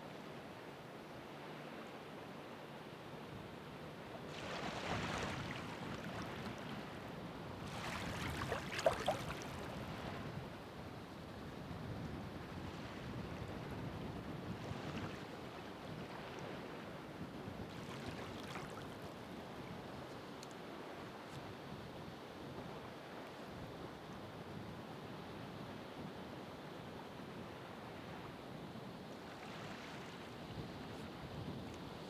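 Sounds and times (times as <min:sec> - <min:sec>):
ocean surf washing ashore: 0:03.9 - 0:10.4.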